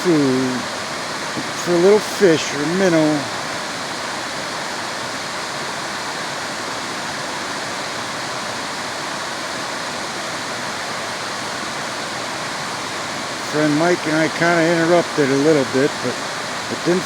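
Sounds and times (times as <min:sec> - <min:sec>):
waterfall rushing over shale: 0:00.0 - 0:17.0.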